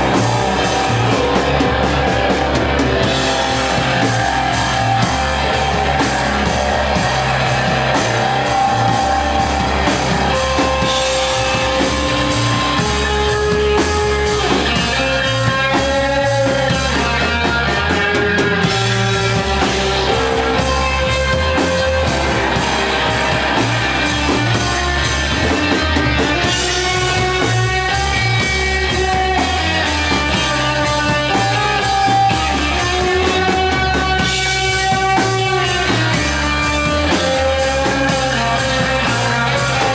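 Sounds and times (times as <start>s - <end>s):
distorted electric guitar: 0.0s - 39.9s
drum kit beat: 0.0s - 39.9s.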